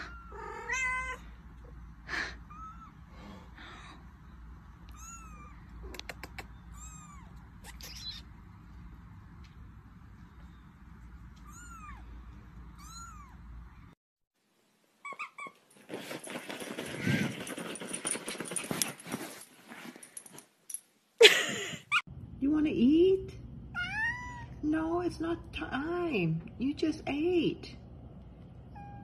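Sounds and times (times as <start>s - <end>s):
cat and kitten meowing: 0.0s - 1.3s, 2.5s - 3.0s, 4.9s - 5.7s, 6.7s - 8.2s, 11.4s - 12.1s, 12.8s - 13.4s, 23.7s - 24.6s, 28.7s - 29.0s.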